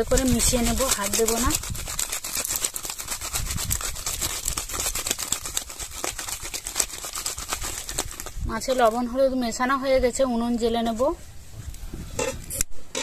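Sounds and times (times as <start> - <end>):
fish mixed in a bowl: 0.0 - 11.0.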